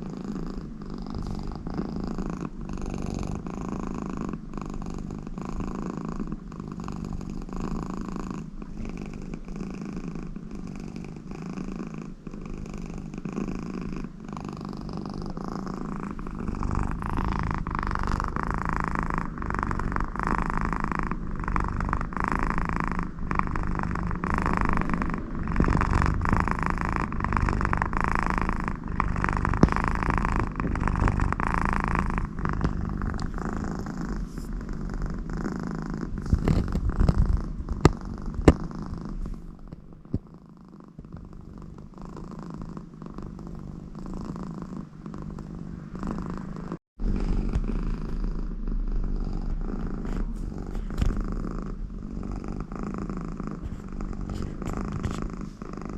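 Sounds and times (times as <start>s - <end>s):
cat purring: 0.0s - 55.9s
snore-like nasal breathing: 23.6s - 39.6s, 46.1s - 55.9s.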